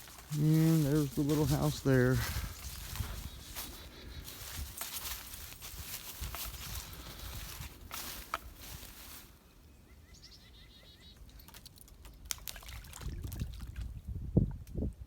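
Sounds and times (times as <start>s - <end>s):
footsteps on woodland ground: 0.0s - 9.6s.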